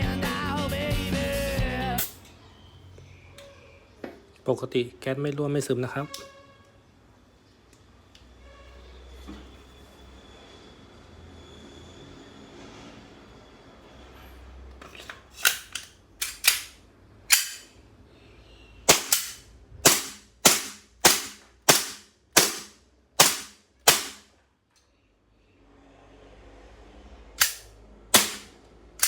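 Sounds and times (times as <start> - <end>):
airsoft pistol shots: 18.9 - 24.2, 27.4 - 28.5.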